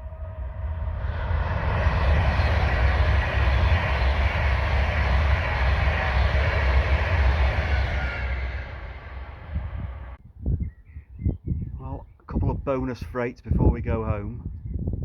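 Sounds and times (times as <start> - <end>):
train passing at speed: 0.0 - 10.2.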